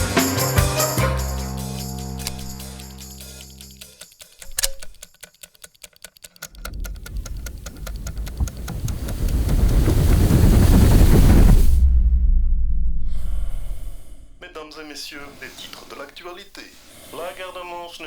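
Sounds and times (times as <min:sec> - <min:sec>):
clock-like ticking: 0:03.2 - 0:11.0
low rumble: 0:06.6 - 0:14.8.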